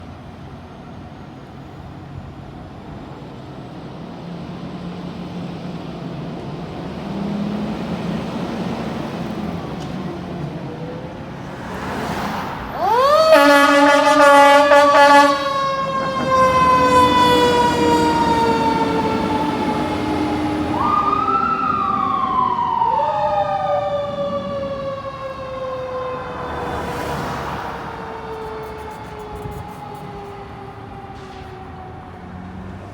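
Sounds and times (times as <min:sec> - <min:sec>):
fire engine pulling out: 0:00.0 - 0:32.9
air horn blast: 0:12.8 - 0:19.2.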